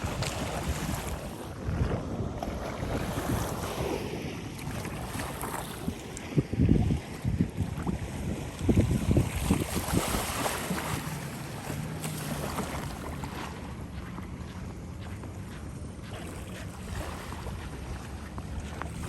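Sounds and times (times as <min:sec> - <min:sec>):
wind buffeting microphone: 0:00.0 - 0:19.0
steady low hum: 0:10.7 - 0:19.0.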